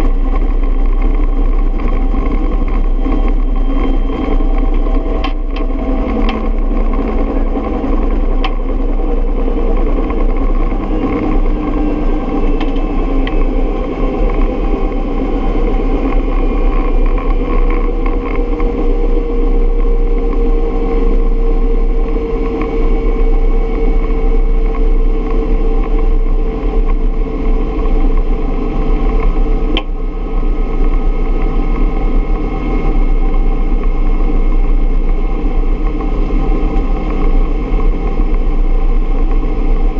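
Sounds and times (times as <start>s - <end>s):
helicopter turbine and rotor drone: 0.0s - 39.9s.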